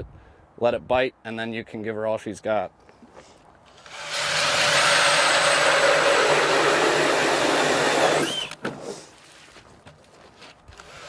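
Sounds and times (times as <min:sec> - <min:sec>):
drill boring through ice: 0:03.7 - 0:08.6, 0:10.8 - 0:11.0.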